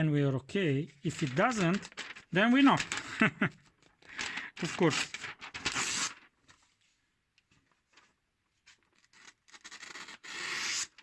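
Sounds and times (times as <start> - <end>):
knife tip scratching paper: 9.0 - 11.0.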